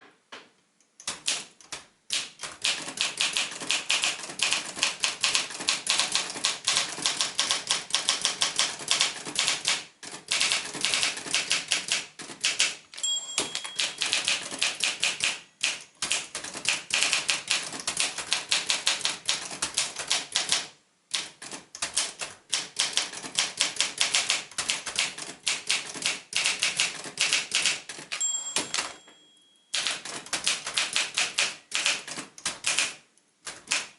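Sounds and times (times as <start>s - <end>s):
manual typewriter typing: 1.0s - 29.1s, 29.7s - 33.9s
typewriter margin bell: 13.0s - 16.4s, 28.1s - 31.2s.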